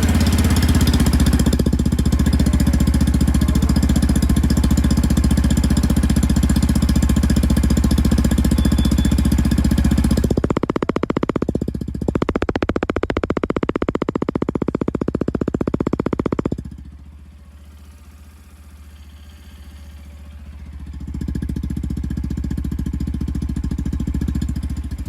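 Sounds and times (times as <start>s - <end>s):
motorcycle engine idling: 0.0s - 25.0s.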